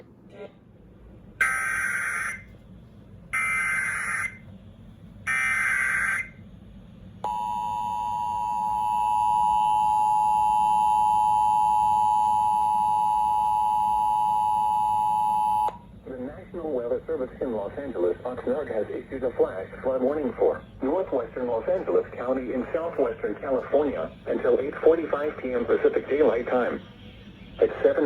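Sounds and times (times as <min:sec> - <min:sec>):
steady warning alarm tone: 0:01.4 - 0:02.6, 0:03.2 - 0:28.0.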